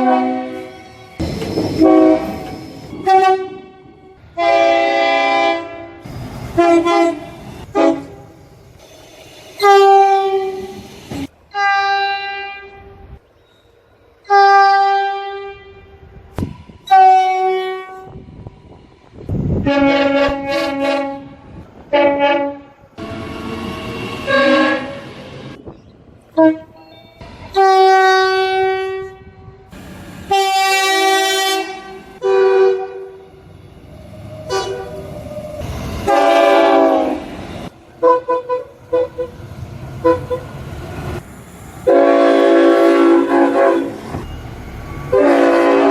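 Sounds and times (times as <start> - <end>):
train horn blasts: 0.0 - 1.1, 1.7 - 6.0, 6.6 - 8.4, 9.6 - 10.8, 11.5 - 13.2, 14.2 - 16.2, 16.8 - 18.2, 19.6 - 25.2, 26.3 - 26.9, 27.5 - 29.7, 30.3 - 33.4, 34.5 - 35.1, 36.0 - 37.3, 38.0 - 39.4, 40.0 - 40.5, 41.8 - 44.2, 45.1 - 45.9.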